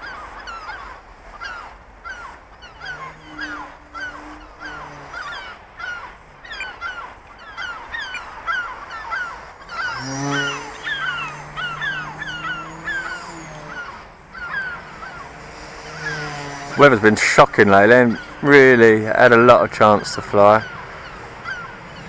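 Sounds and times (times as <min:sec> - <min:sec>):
gulls calling: 0:00.0 - 0:22.0
low steady hum rising in pitch: 0:00.0 - 0:22.0.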